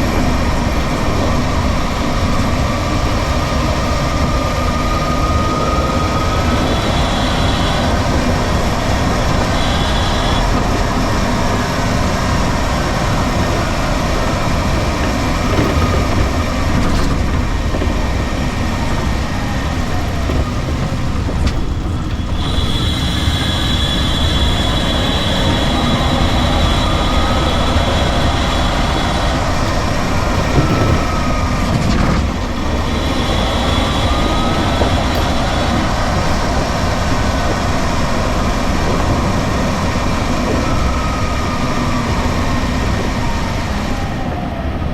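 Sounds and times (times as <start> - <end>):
high steady whine: 0.0 - 44.9
road and running noise: 0.0 - 44.9
electric motor whine: 5.2 - 11.3, 22.1 - 37.4.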